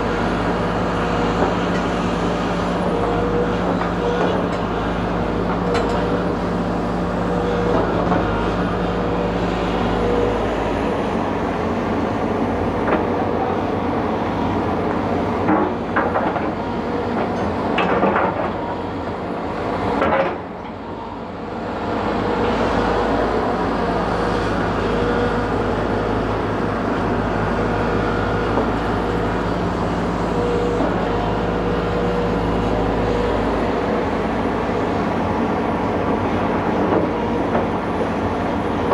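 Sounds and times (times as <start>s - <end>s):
excavator diesel engine humming: 0.0s - 20.0s, 20.7s - 38.9s.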